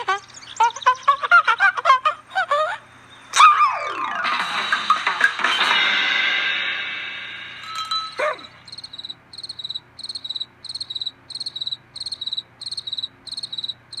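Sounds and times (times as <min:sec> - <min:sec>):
crickets chirping: 0:08.7 - 0:14.0.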